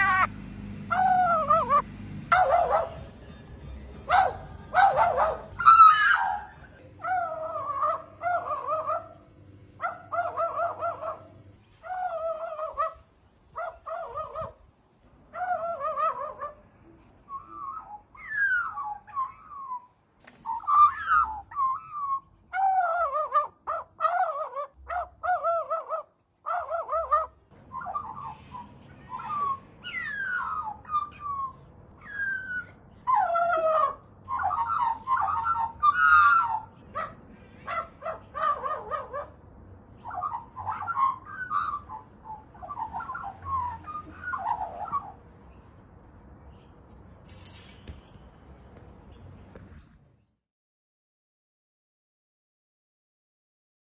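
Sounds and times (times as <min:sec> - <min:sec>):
crow bark-like calls: 0:00.9 - 0:03.1, 0:04.1 - 0:14.6, 0:20.5 - 0:39.4, 0:40.0 - 0:45.2.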